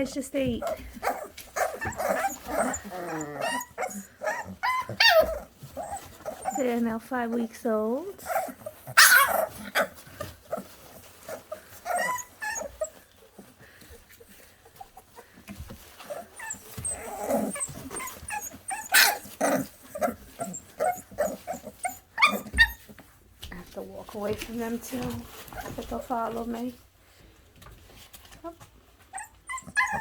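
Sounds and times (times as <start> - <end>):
puppies yipping and squealing: 0.6 - 6.8, 8.2 - 23.1, 29.0 - 30.0
puppy yelps: 1.0 - 6.6, 8.2 - 10.6, 11.3 - 13.0, 16.1 - 23.0, 29.1 - 30.0.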